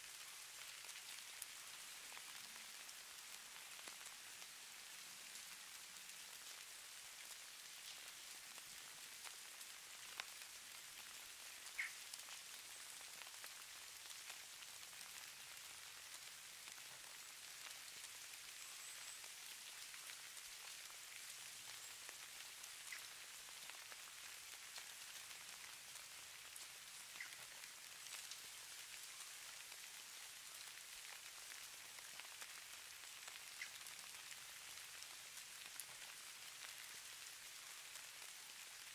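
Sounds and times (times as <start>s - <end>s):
light precipitation pattering: 0.0s - 38.9s.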